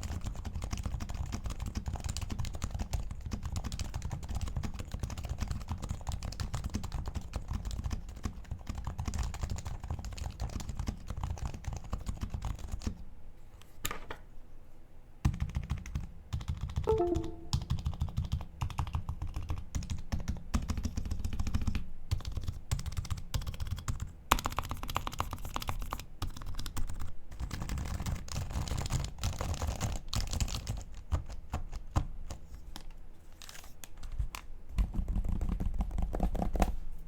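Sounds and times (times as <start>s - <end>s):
keyboard typing: 15.3s - 19.5s.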